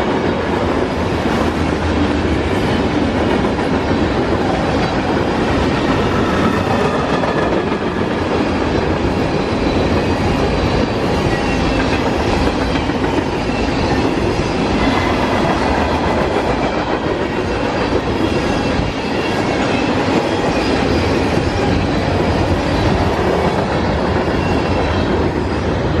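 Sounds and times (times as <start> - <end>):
steel wheels on rail: 0.0 - 26.0.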